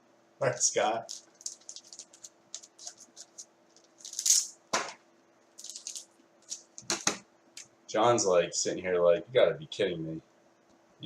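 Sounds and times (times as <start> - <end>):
cards and packaging rustling: 1.0 - 4.5, 5.6 - 7.1.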